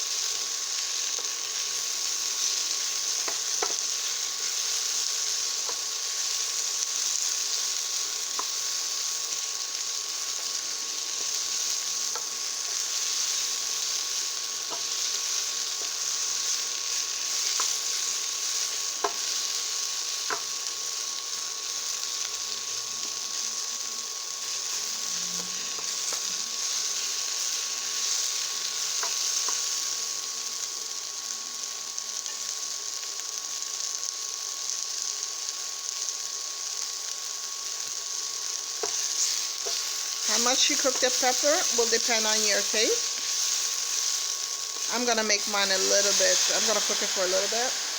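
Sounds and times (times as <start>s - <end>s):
vegetables sizzling in a pan: 0.0s - 47.9s.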